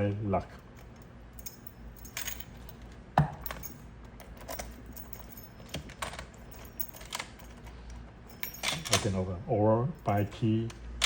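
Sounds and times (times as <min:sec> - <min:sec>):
metallic lock clicks and clacks: 0:02.2 - 0:07.6, 0:08.3 - 0:09.2.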